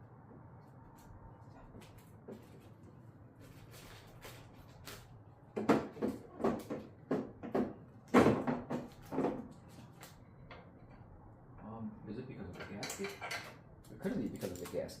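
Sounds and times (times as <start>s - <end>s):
hard plastic knocks and clacks: 5.6s - 9.5s.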